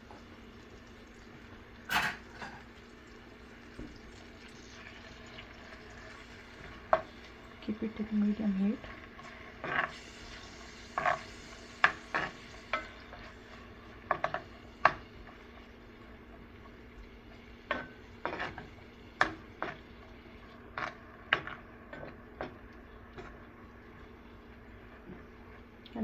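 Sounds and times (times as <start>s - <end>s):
food sizzling in a pan: 0.0s - 26.0s
spatula scraping a pan: 8.8s - 15.5s, 17.6s - 23.4s.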